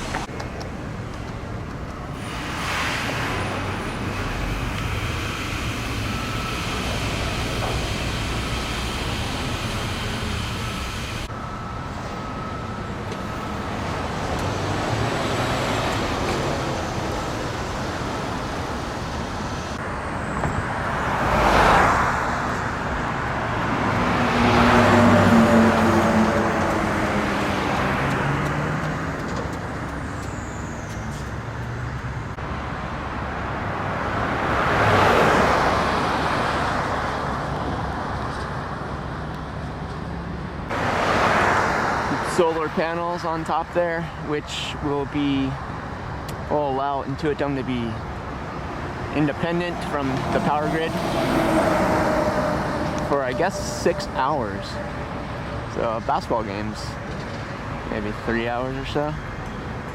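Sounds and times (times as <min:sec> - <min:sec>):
road traffic noise: 0:00.0 - 0:59.9
vehicles passing close by: 0:00.0 - 0:59.9
low engine drone: 0:47.6 - 0:58.9.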